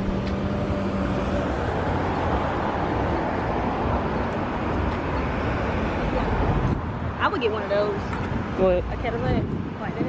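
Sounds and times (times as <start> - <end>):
cars passing: 0.0 - 10.0.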